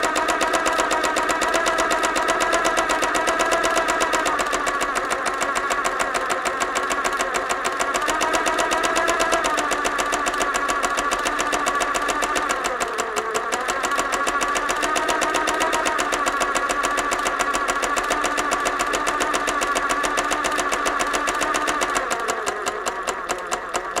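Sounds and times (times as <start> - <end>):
sewing machine stitching: 0.0 - 24.0.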